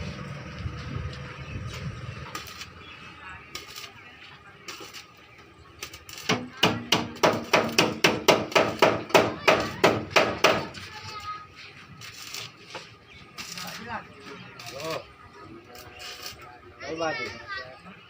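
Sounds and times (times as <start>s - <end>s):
hammer striking metal: 6.2s - 10.8s
scattered knocks: 6.3s - 10.8s.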